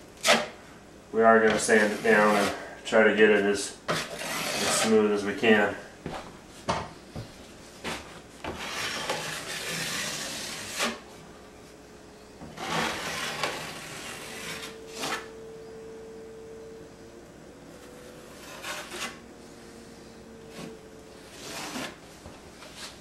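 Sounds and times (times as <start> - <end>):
drywall knife scraping wall: 0.2 - 0.6, 1.4 - 2.7, 3.9 - 5.1, 8.4 - 11.1, 12.5 - 15.3, 18.2 - 19.2, 20.5 - 22.0.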